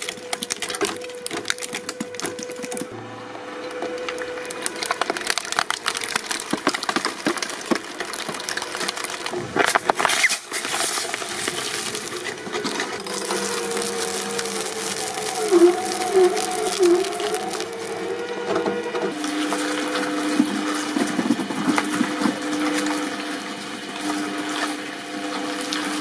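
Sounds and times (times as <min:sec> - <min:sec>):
object cracking and splintering: 0:00.0 - 0:03.0, 0:03.8 - 0:18.6
hydraulic press hum: 0:00.0 - 0:26.0
wavering tone: 0:11.7 - 0:21.0.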